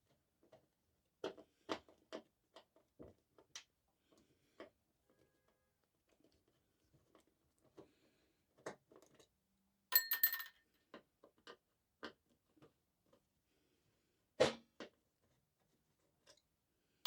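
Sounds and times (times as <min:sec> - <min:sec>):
metal parts clinking: 0:09.9 - 0:10.5.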